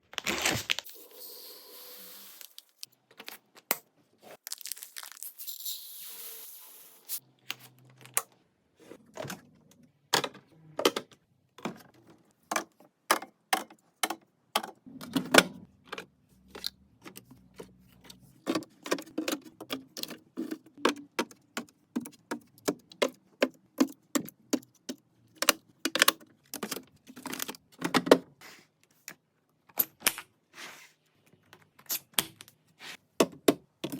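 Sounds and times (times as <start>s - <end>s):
packaging rustling and tearing: 0.0s - 1.0s, 4.4s - 5.6s
containers clicking and knocking: 10.2s - 28.2s.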